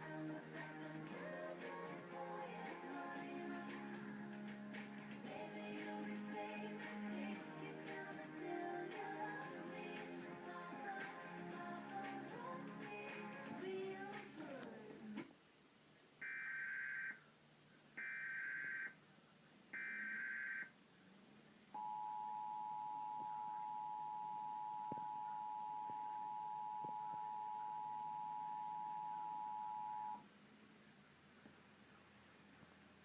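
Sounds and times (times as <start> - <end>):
two-tone attention signal: 21.8 - 30.2.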